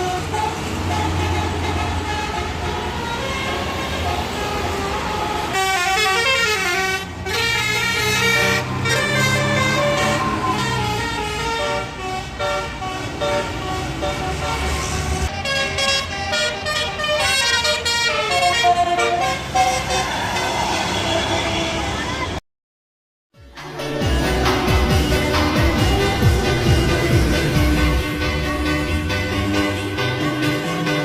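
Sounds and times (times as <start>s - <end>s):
multi-trumpet horn melody: 0.0s - 20.1s, 24.5s - 31.0s
bus engine drone: 0.0s - 22.4s, 23.4s - 31.0s.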